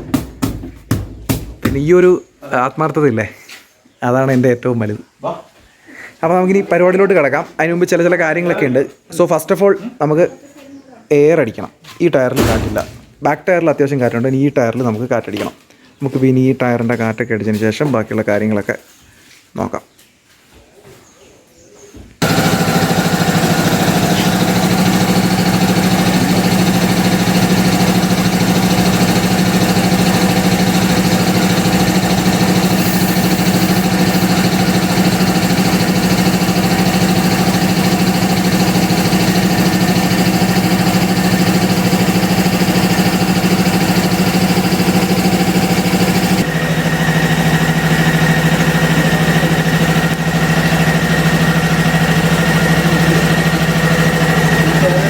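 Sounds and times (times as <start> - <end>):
motor humming: 22.2 - 55.0.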